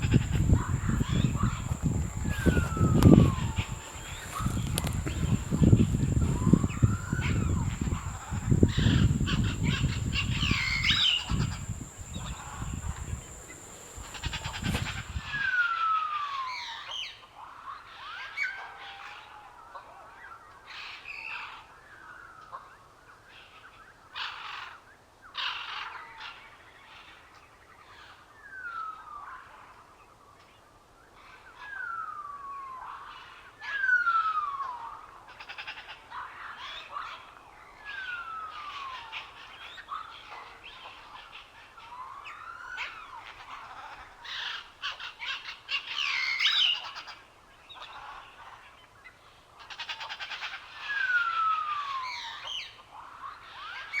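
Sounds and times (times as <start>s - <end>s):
wild birds chirping: 0.0s - 15.6s.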